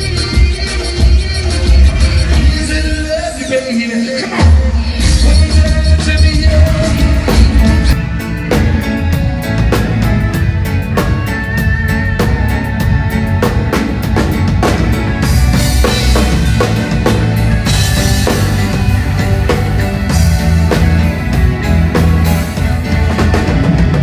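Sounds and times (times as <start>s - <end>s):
drum kit steady beat: 0.0s - 3.6s, 4.2s - 24.0s
held bass line: 4.4s - 24.0s.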